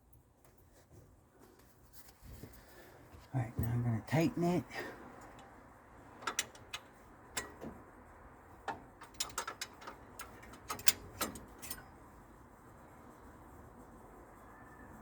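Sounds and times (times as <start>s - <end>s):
ratchet wrench clicking: 6.1s - 7.6s, 8.7s - 11.8s.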